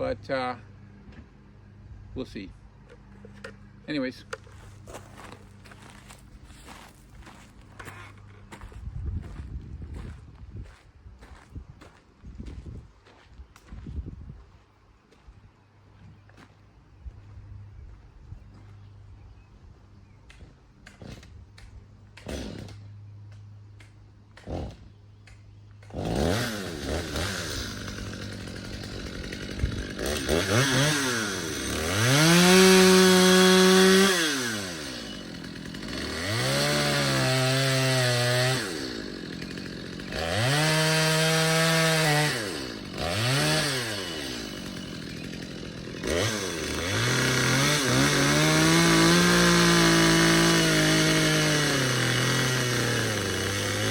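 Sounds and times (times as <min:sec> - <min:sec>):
chainsaw revving: 0:20.8 - 0:21.4, 0:22.1 - 0:23.1, 0:23.8 - 0:25.0, 0:25.8 - 0:53.9.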